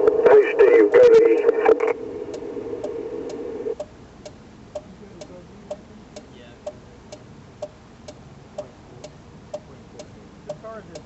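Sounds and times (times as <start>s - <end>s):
police radio transmission: 0.0s - 2.0s
steady even ticking: 2.3s - 11.0s.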